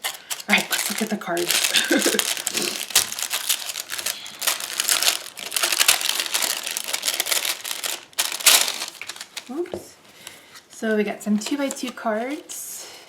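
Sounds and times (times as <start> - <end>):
packaging crinkling: 0.0 - 10.3.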